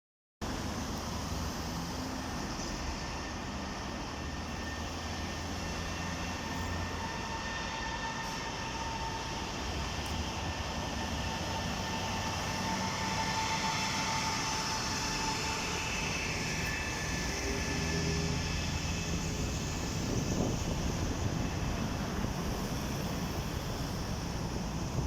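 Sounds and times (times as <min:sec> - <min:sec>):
train rumbling: 0:00.4 - 0:25.0
high electrical whine: 0:00.5 - 0:25.0.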